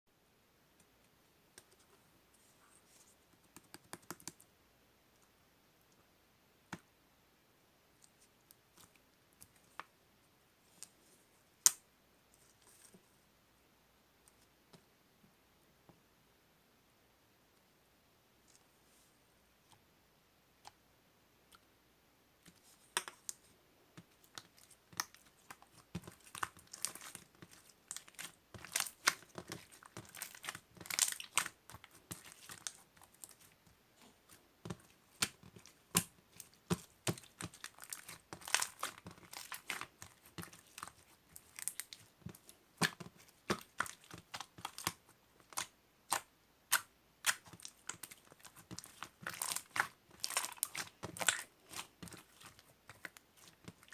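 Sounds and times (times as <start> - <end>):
crinkling and crackling clicks: 24.0 - 53.9.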